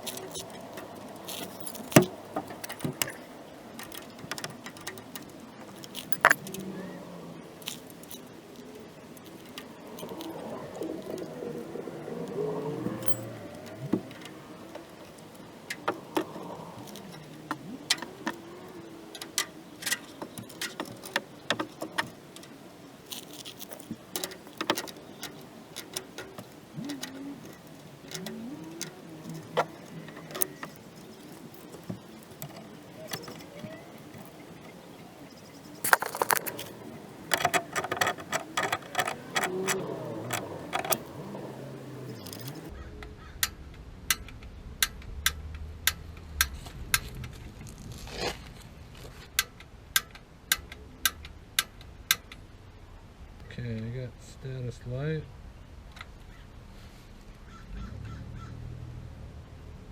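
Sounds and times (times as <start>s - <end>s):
tools rattling on metal: 0.0s - 6.7s, 7.5s - 42.7s.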